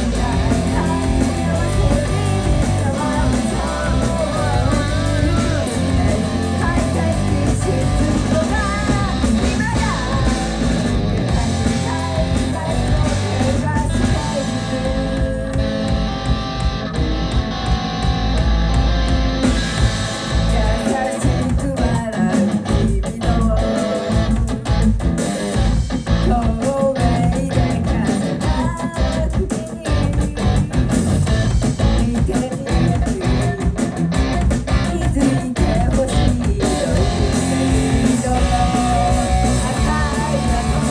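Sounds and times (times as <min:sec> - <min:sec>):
person singing: 0:00.0 - 0:16.2, 0:20.4 - 0:24.6, 0:26.2 - 0:40.9
rapid drum hits: 0:00.0 - 0:23.5, 0:24.2 - 0:40.9
rock band playing: 0:00.0 - 0:40.9.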